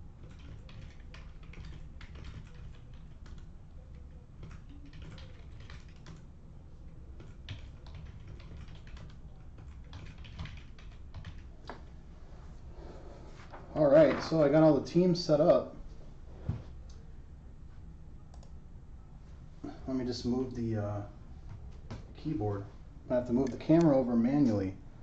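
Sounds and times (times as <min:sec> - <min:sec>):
typing on a computer keyboard: 0:00.1 - 0:11.8.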